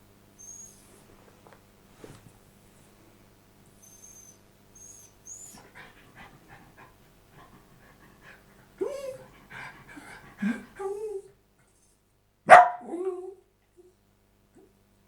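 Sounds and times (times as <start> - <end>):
dog whining: 0.4 - 1.0, 3.8 - 5.7
dog panting: 5.5 - 10.9
dog yelping bark: 12.5 - 13.0.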